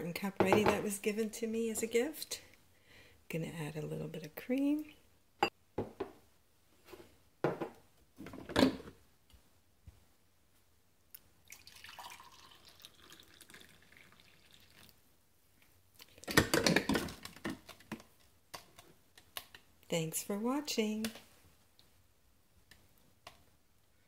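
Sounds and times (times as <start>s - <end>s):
liquid trickling into mug: 11.4s - 15.0s.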